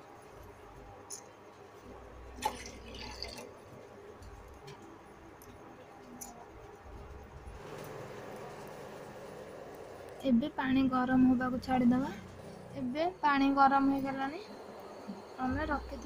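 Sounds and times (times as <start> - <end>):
water pouring into a pot: 2.4 - 3.6.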